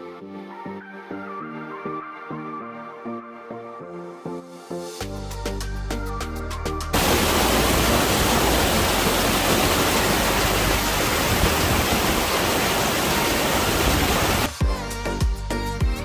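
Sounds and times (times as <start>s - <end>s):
waterfall rushing: 7.0s - 14.6s.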